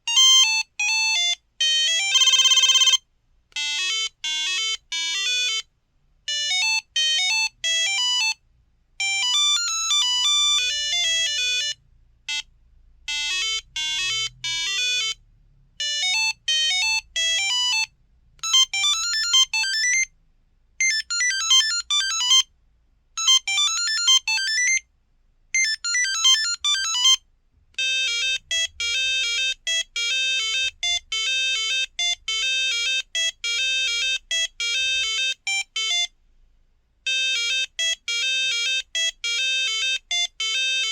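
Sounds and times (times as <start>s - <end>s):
monophonic phone ringtones: 0.1s - 3.0s, 9.0s - 12.5s, 15.8s - 20.1s, 20.8s - 22.4s, 23.2s - 24.8s, 25.6s - 27.2s, 27.8s - 36.1s, 37.1s - 40.9s.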